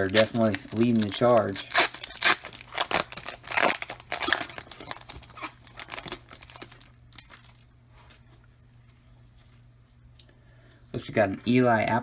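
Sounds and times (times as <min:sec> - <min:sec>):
plastic wrapper crinkling and tearing: 0:00.0 - 0:08.2.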